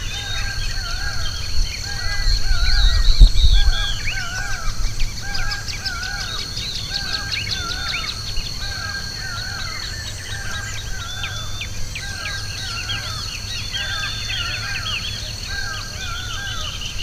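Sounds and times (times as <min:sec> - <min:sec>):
birds chirping high: 0:00.0 - 0:17.0.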